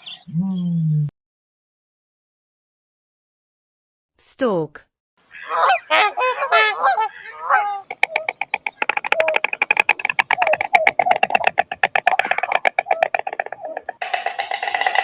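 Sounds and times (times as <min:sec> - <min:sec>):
short wavering calls: 0:05.3 - 0:15.0
stork clattering its bill: 0:05.4 - 0:15.0.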